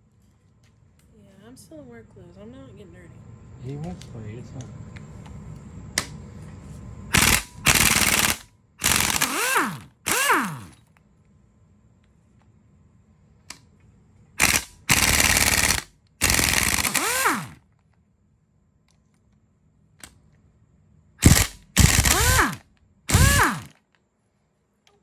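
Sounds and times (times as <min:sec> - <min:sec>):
impact wrench hammering: 0:07.1 - 0:10.8, 0:14.4 - 0:17.6, 0:21.2 - 0:23.7.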